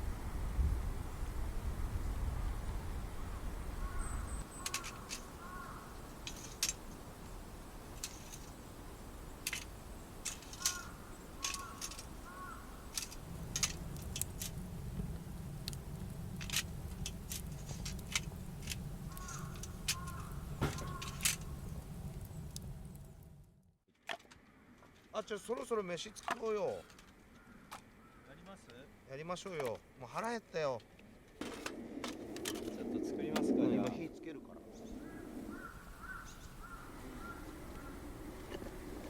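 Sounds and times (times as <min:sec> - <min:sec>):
bird calling: 0:03.8 - 0:13.3, 0:19.1 - 0:21.6, 0:25.1 - 0:28.8, 0:34.7 - 0:39.0
gear being handled clicks: 0:12.9 - 0:14.6
low rumble: 0:13.2 - 0:23.6.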